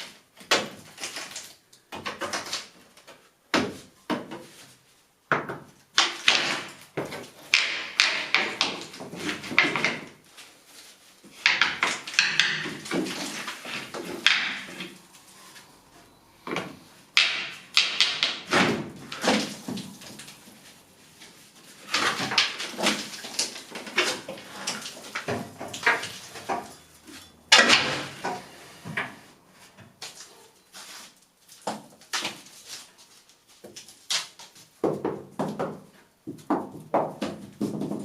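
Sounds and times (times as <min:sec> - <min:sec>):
knocks and scrapes on plaster: 0:10.8 - 0:15.6, 0:33.6 - 0:38.0.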